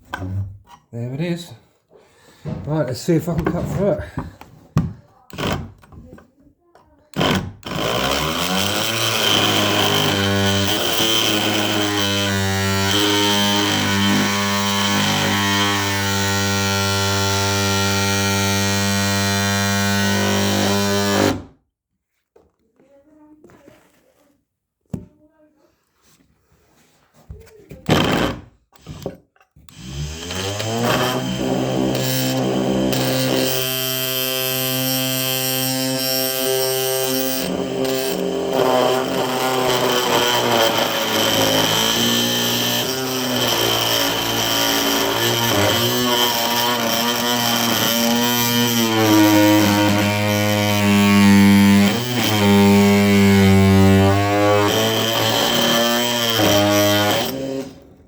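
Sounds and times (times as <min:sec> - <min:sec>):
oscillating multi-tool buzzing: 0:07.2 - 0:21.4, 0:29.7 - 0:57.8.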